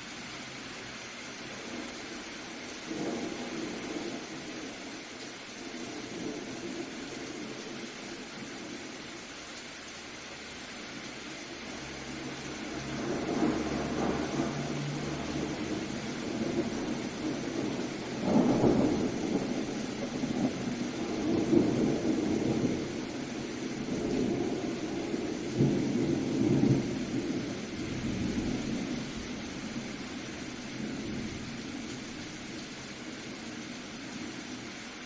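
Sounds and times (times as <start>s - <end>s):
steady rain: 0.0s - 35.0s
rolling thunder: 2.9s - 5.0s, 12.2s - 32.6s.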